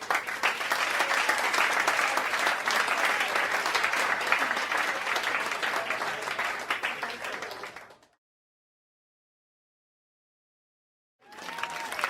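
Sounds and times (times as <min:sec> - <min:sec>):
audience applause: 0:00.0 - 0:08.2, 0:11.2 - 0:12.0.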